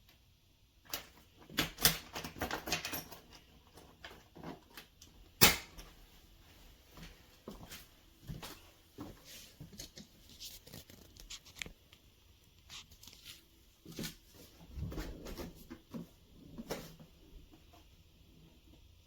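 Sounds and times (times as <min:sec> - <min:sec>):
suitcases clicking and knocking: 0:00.9 - 0:04.7.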